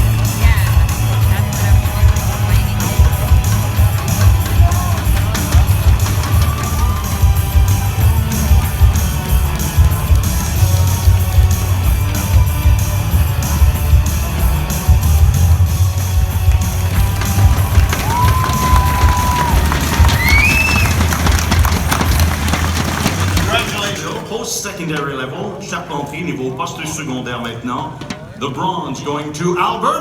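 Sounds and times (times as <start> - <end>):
loud music with heavy beat: 0.0 - 22.8.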